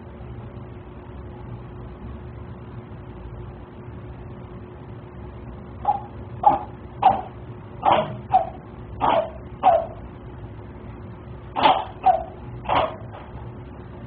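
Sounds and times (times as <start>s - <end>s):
cat sneezing: 5.8s - 10.0s, 11.5s - 13.3s.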